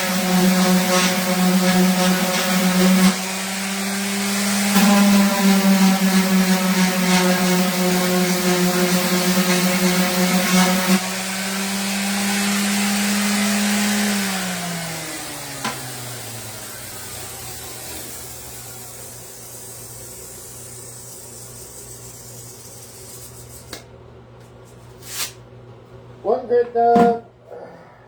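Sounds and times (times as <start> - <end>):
orbital sander running: 0.0 - 23.3.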